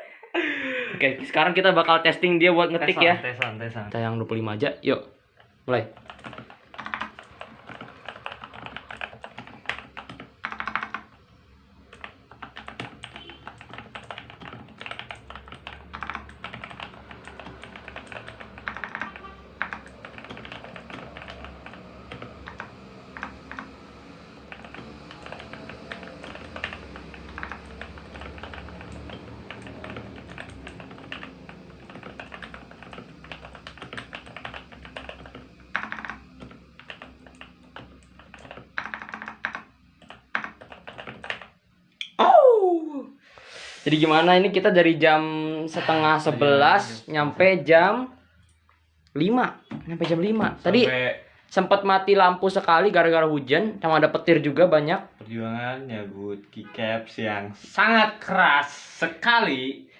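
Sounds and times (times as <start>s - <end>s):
fast mechanical keyboard typing: 1.2s - 4.7s, 5.4s - 41.7s, 49.2s - 51.0s, 51.6s - 53.2s.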